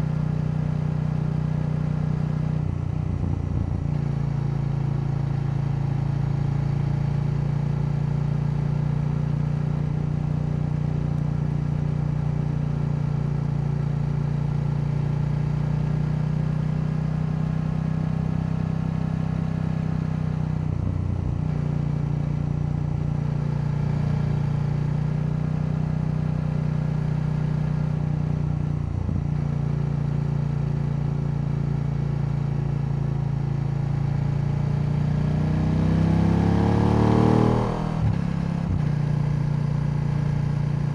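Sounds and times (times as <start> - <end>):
motorcycle engine cruising: 9.2 - 40.9.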